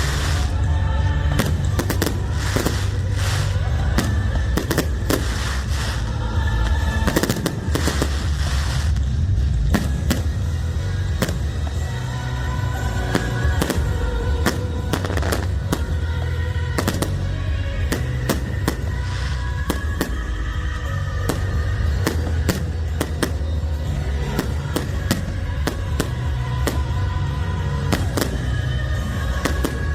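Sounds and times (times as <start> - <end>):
fireworks bangs and crackles: 0.0 - 29.9
music playing: 0.0 - 29.9.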